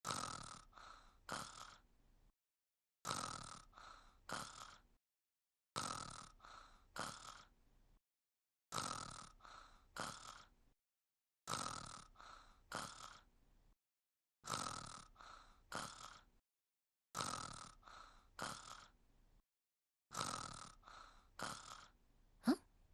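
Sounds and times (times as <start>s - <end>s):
cartoon snoring: 0.1s - 1.9s, 3.0s - 4.9s, 5.8s - 7.5s, 8.7s - 10.6s, 11.5s - 13.3s, 14.4s - 16.3s, 17.2s - 19.0s, 20.1s - 22.6s.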